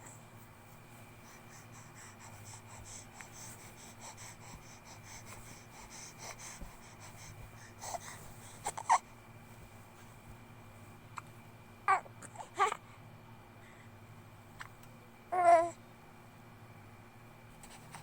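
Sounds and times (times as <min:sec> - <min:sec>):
baby breathing quickly: 0:00.7 - 0:09.0.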